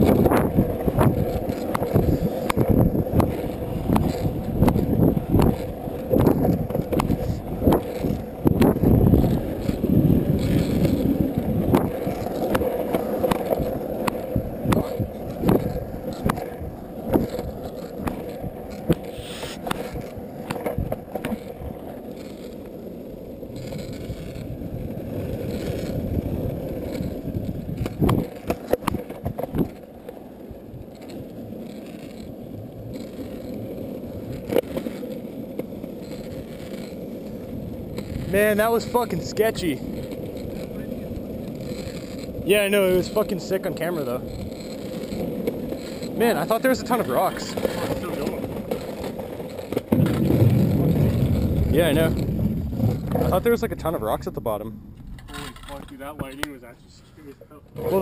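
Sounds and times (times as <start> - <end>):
longboard wheels rumbling: 0.0 - 58.0
wheels clicking over cracks: 0.0 - 58.0.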